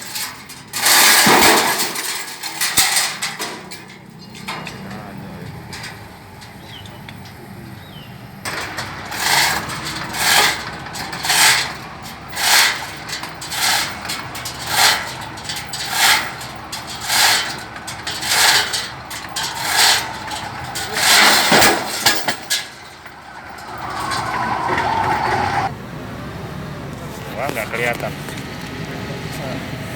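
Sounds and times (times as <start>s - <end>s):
rig engine running: 0.0s - 29.9s
pile-driving hammer blows: 8.5s - 25.7s.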